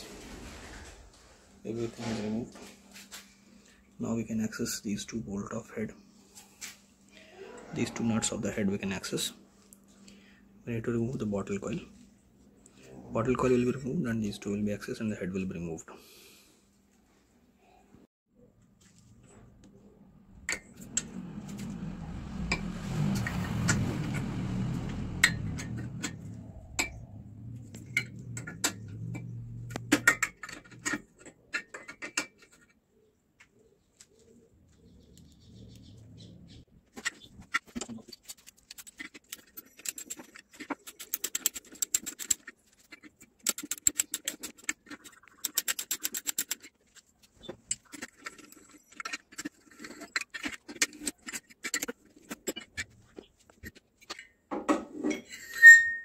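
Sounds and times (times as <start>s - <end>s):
metal tools clattering: 55.0s - 56.0s.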